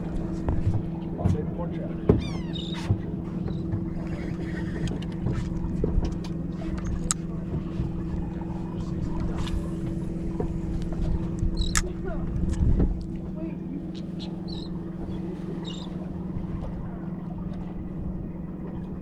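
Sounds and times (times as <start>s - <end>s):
boat engine humming: 0.0s - 19.0s
water and hull noise: 0.0s - 19.0s.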